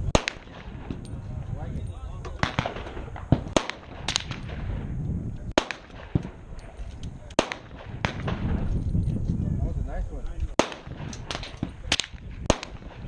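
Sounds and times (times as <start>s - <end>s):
gunshots: 0.0s - 1.1s, 2.3s - 4.9s, 5.5s - 8.7s, 10.5s - 13.0s.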